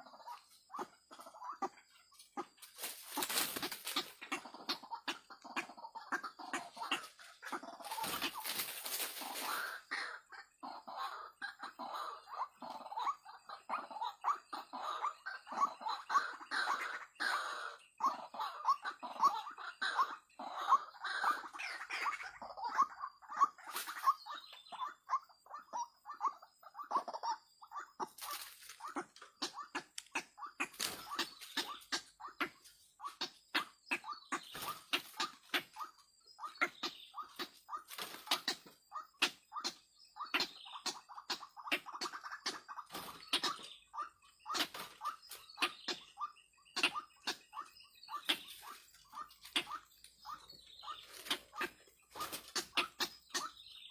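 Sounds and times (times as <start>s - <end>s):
waterhens calling harsh notes: 27.1s - 53.9s.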